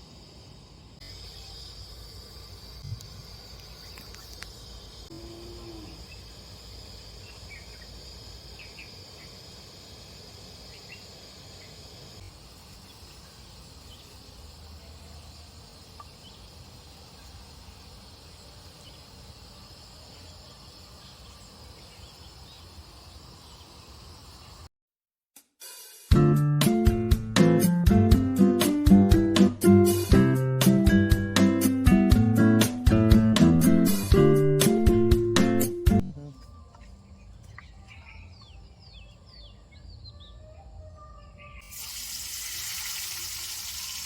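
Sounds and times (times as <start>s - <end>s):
insects trilling: 0.0s - 24.7s, 36.2s - 44.0s.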